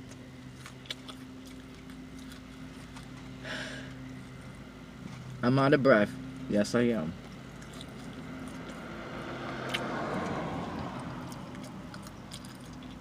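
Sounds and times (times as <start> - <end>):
steady low hum: 0.0 - 13.0
vehicle passing: 1.4 - 13.0.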